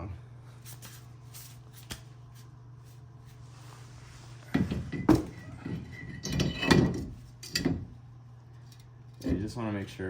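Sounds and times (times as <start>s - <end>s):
metal clunks and scrapes: 4.4s - 7.9s.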